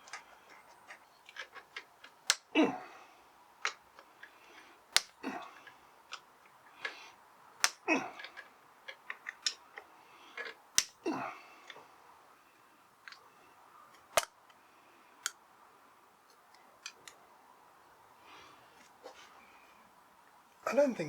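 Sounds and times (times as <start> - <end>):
metallic clicks of hand tools: 0.0 - 2.5, 3.6 - 7.0, 7.6 - 11.0, 14.0 - 14.6.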